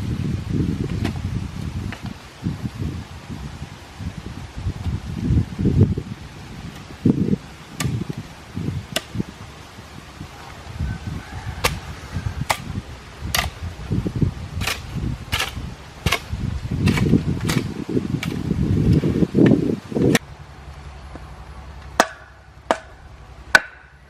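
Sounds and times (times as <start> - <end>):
low uneven rumble: 0.0 - 24.0
sharp tool strikes: 22.0 - 23.8.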